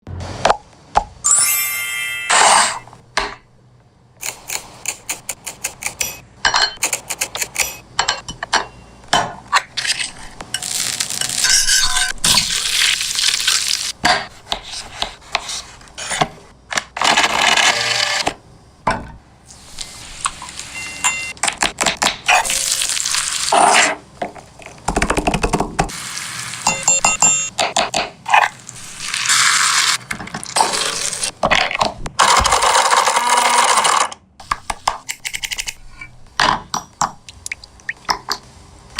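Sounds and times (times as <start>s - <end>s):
hissing sizzle: 12.4s - 14.0s, 19.5s - 21.0s, 22.4s - 23.6s, 25.9s - 26.8s.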